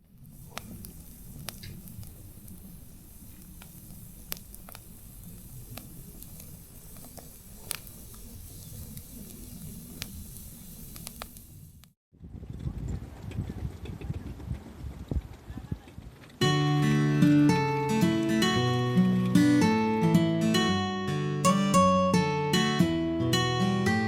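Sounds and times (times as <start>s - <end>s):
wood fire crackling: 0.0s - 12.0s, 16.4s - 21.8s.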